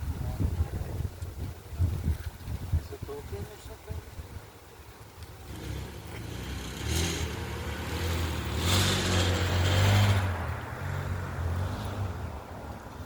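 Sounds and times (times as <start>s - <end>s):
car driving past: 5.4s - 13.0s.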